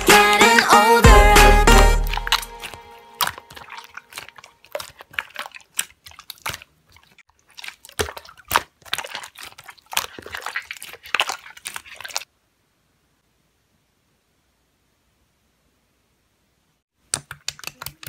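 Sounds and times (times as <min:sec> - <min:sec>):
slime squishing with wet pops: 0:02.0 - 0:12.3.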